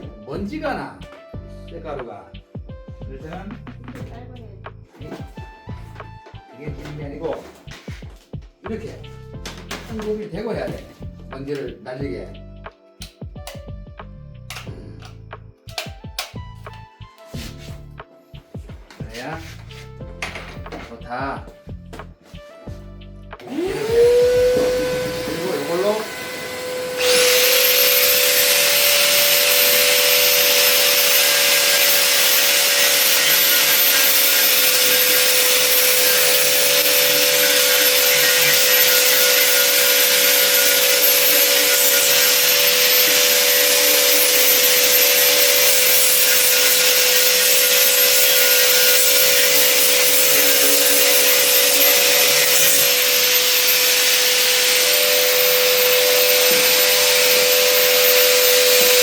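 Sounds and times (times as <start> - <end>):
power tool grinding metal: 23.4 - 59.0.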